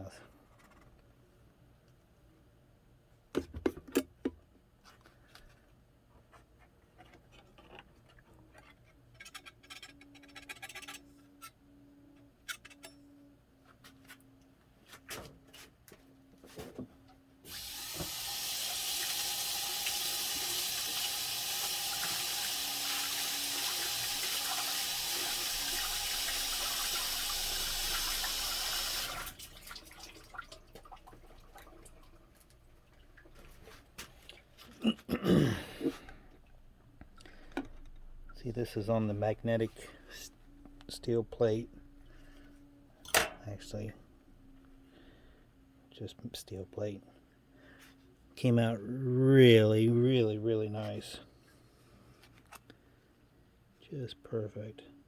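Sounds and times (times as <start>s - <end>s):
tap running into a sink: 17.5s - 29.4s.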